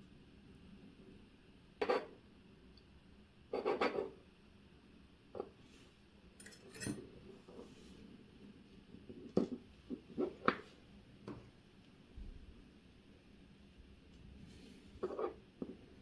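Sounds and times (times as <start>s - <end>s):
small metal parts clicking and clinking: 6.4s - 7.0s.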